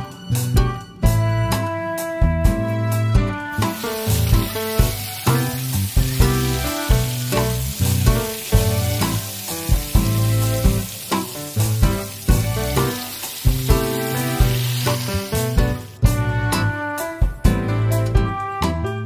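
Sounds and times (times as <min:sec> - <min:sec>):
background music with beat: 0:00.0 - 0:19.0
food sizzling in hot oil: 0:03.5 - 0:16.0.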